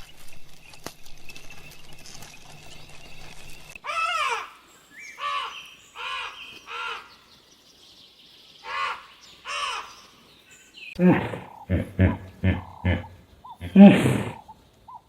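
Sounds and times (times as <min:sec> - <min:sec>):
animal calling: 0:11.0 - 0:15.0.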